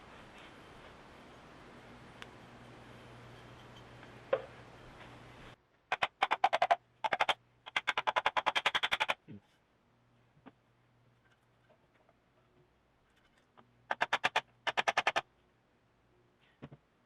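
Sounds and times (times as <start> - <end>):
faint steady hum: 0.0 - 8.5, 9.2 - 17.0
rapid sharp clicking: 13.9 - 15.2.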